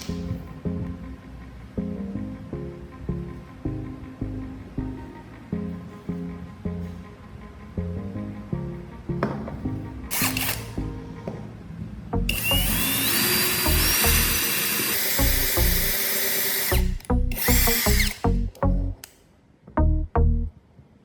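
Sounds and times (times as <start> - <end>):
power tool motor whine: 12.3 - 18.2
music with pulsing bass beat: 16.8 - 19.0, 19.8 - 20.5.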